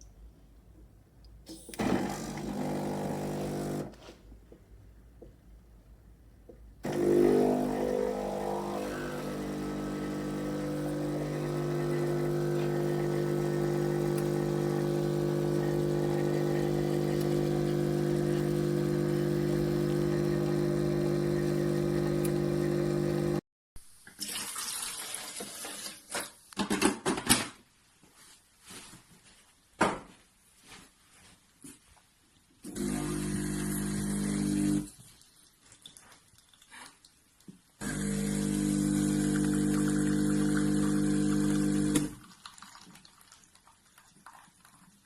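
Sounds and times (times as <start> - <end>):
espresso machine pump humming: 1.8 - 3.9, 6.8 - 23.4, 32.7 - 34.9, 37.8 - 42.2.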